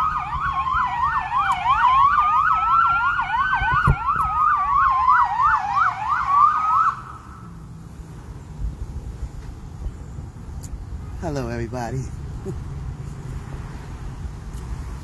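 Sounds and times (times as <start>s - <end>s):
siren wail rising and falling: 0.0s - 7.5s
siren yelp: 0.0s - 7.5s.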